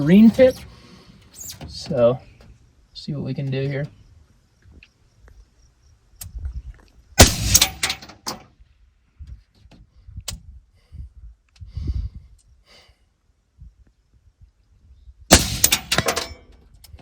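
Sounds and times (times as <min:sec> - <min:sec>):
suppressed rifle shot: 0:07.2 - 0:08.1, 0:15.3 - 0:16.3.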